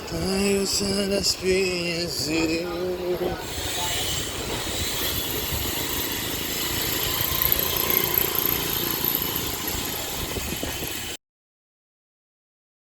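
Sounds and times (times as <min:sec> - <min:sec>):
wind rumbling on microphone: 0:00.0 - 0:07.9, 0:09.2 - 0:11.2
bicycle freewheel buzzing: 0:03.4 - 0:11.2.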